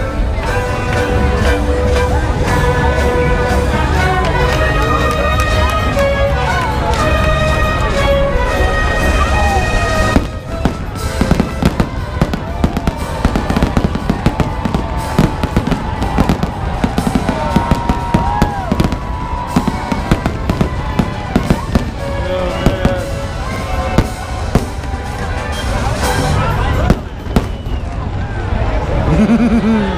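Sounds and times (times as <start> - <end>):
fireworks bangs and crackles: 9.1 - 28.4
fireworks whistles: 9.8 - 24.8, 26.8 - 28.0.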